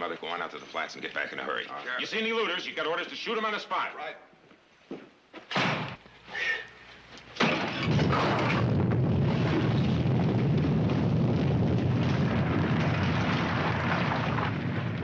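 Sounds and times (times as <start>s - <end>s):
deep earthquake rumbling: 7.8s - 15.0s.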